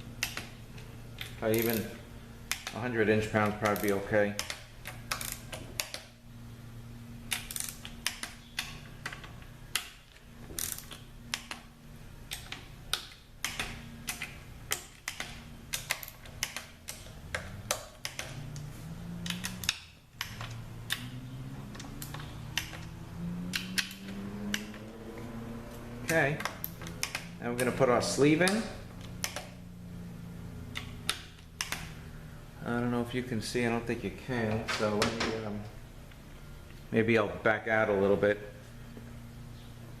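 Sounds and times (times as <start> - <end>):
torque wrench clicking: 1.2 - 6.2, 7.3 - 11.6, 12.3 - 24.9, 25.7 - 27.8
low hum: 16.9 - 37.0.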